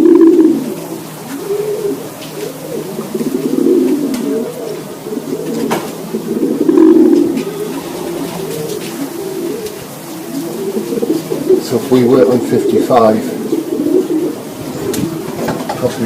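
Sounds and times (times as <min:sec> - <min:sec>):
pigeons cooing: 0:00.0 - 0:16.0.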